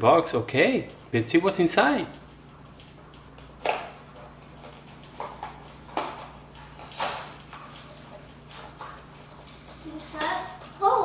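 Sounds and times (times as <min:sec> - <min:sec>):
wrapping rustling and tearing: 0:02.8 - 0:11.0.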